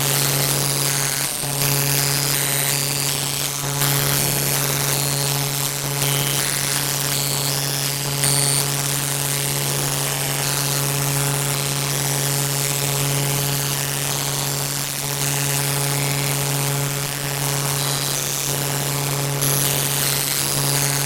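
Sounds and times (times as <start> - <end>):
steady low-pitched buzz: 0.0 - 21.0.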